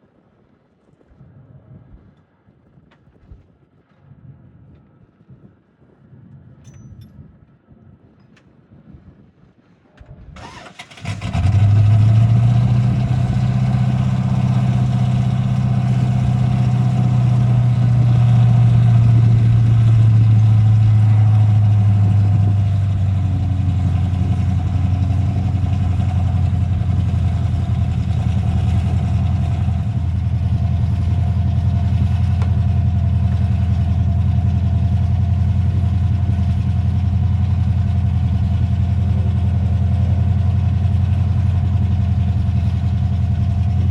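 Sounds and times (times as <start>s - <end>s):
vehicle engine starting and idling: 10.4s - 43.9s.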